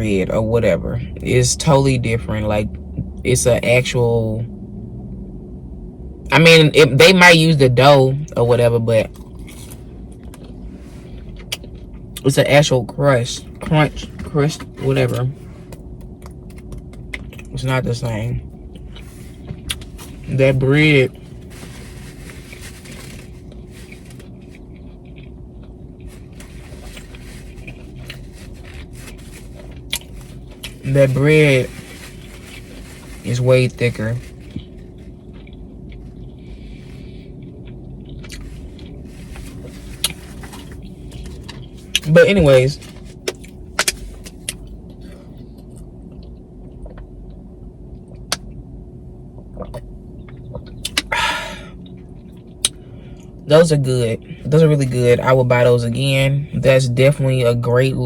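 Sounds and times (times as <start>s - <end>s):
steady low hum: 0.0s - 58.0s
person chewing food: 18.6s - 20.3s, 22.2s - 30.8s, 34.4s - 42.0s
short rustle: 21.0s - 24.6s, 26.0s - 35.2s, 38.4s - 43.3s.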